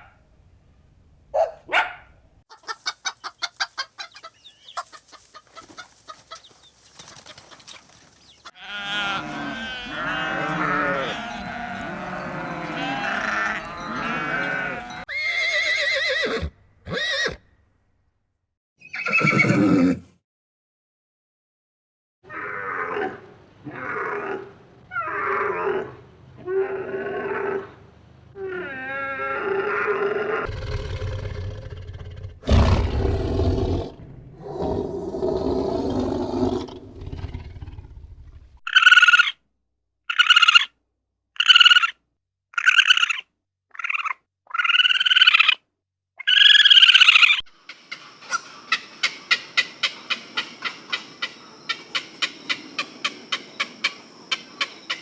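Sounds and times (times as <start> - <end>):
repeated pitched animal calls: 8.4 - 17.4, 38.7 - 39.4, 40.1 - 40.8, 41.4 - 42.0, 42.6 - 45.6, 46.2 - 55.0
deep animal roar: 8.6 - 15.0, 28.4 - 38.6.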